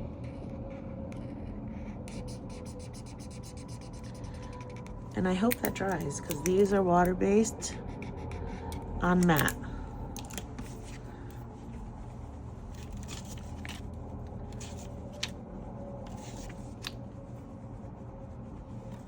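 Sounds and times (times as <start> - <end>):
low background hum: 0.0 - 19.0
paper rustling: 10.2 - 13.9, 14.5 - 15.4, 16.1 - 17.0.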